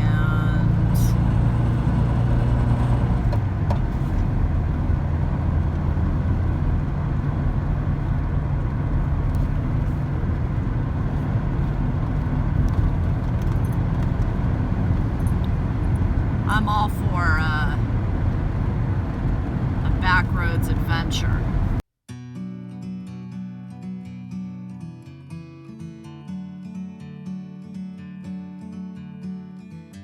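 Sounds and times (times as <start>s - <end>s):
bus engine droning: 0.0s - 21.8s
road noise: 0.0s - 21.8s.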